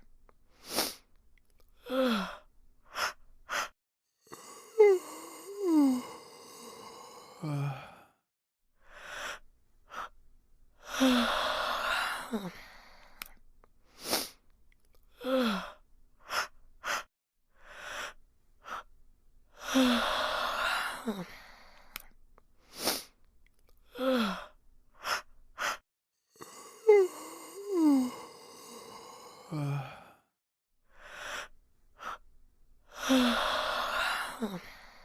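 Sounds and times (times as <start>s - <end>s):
sharp breath bursts: 0.6s - 1.0s, 22.7s - 23.1s
breathy sighs: 1.8s - 8.2s, 10.8s - 13.3s, 15.1s - 18.9s, 19.6s - 22.1s, 23.9s - 30.3s, 32.9s - 35.0s
person yawning: 4.3s - 8.0s, 26.4s - 30.2s.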